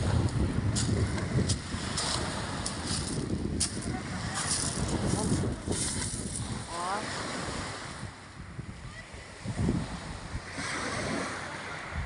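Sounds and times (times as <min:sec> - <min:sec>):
sea waves washing: 0:00.0 - 0:12.0
wind buffeting microphone: 0:00.0 - 0:12.0.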